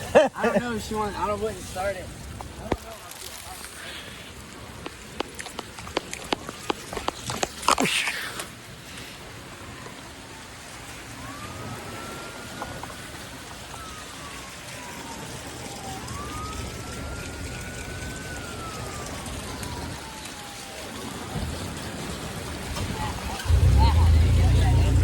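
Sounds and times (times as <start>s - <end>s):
siren wailing: 9.6s - 21.8s, 23.4s - 25.0s.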